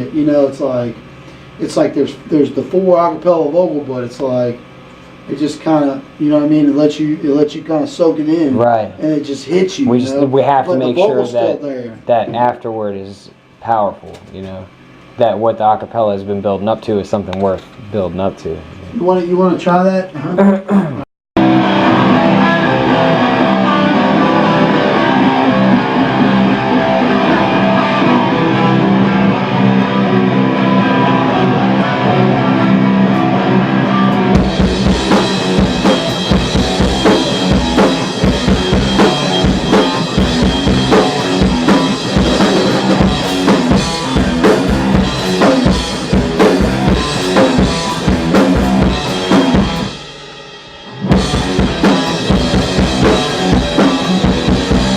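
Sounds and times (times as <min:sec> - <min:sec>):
guitar and bass ringing chords: 0:09.8 - 0:11.8, 0:21.4 - 0:50.2, 0:50.8 - 0:54.9
drum kit: 0:20.9 - 0:54.9.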